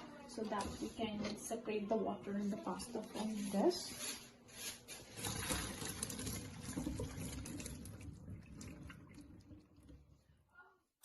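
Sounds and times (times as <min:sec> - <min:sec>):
water pouring and splashing: 0:05.0 - 0:10.2.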